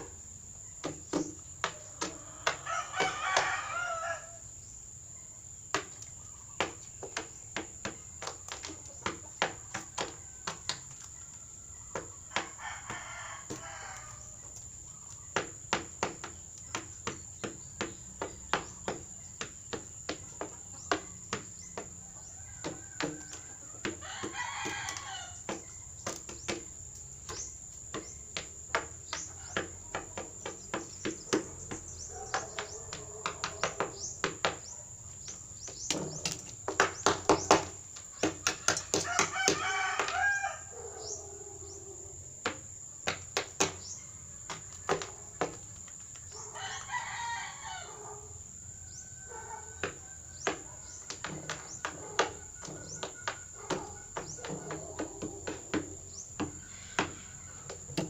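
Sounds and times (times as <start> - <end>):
rooster calls: 1.8 - 4.4, 22.0 - 25.7, 38.6 - 42.3, 46.3 - 58.0.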